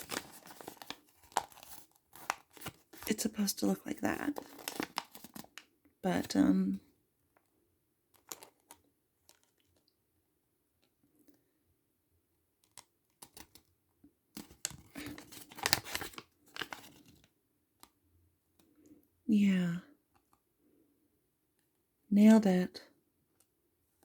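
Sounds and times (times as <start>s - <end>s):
packaging crinkling and rustling: 0.0s - 3.3s, 4.1s - 6.3s, 8.2s - 9.8s, 14.4s - 17.3s.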